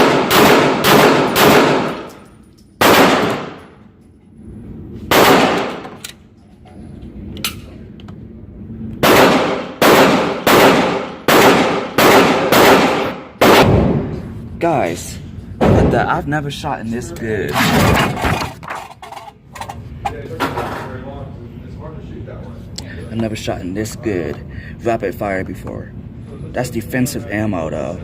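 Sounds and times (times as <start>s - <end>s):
handgun shots: 0.0s - 2.1s.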